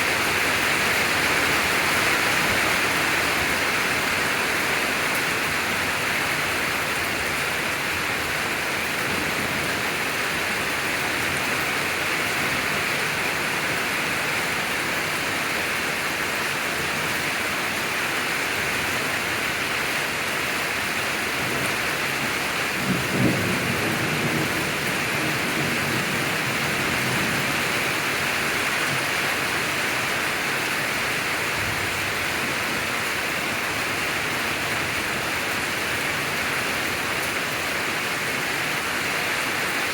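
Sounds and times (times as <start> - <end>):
heavy rain falling: 0.0 - 39.9
thunder rumbling: 22.7 - 27.8.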